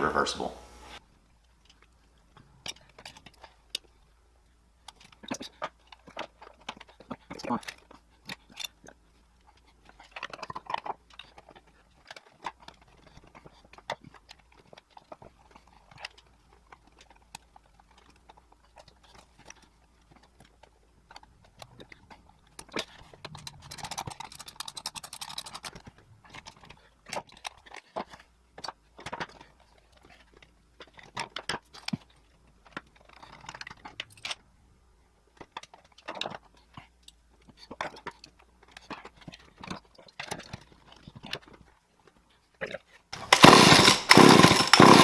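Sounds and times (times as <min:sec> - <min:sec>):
metallic clicks and scrapes: 0:23.2 - 0:25.8
metal parts rattling: 0:23.4 - 0:25.7, 0:43.2 - 0:45.0.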